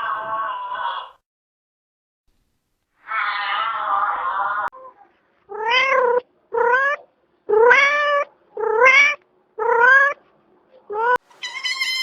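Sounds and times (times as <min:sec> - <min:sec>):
cat meowing: 0:05.5 - 0:10.2, 0:10.9 - 0:12.0.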